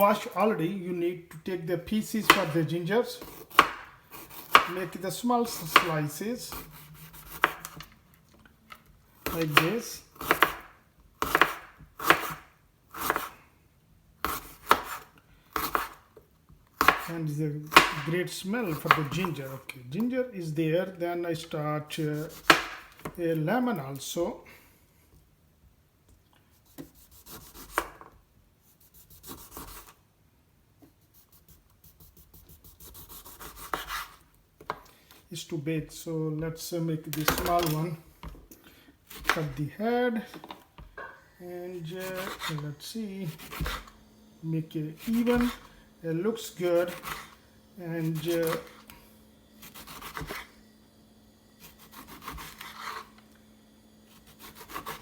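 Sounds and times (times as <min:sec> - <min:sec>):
knife sawing through lemon: 0:03.2 - 0:07.7, 0:22.0 - 0:22.6, 0:26.8 - 0:27.8, 0:28.8 - 0:29.9, 0:31.2 - 0:34.2, 0:41.8 - 0:43.9, 0:45.0 - 0:45.7, 0:46.6 - 0:47.4, 0:49.6 - 0:50.5, 0:51.6 - 0:53.1, 0:54.1 - 0:55.0.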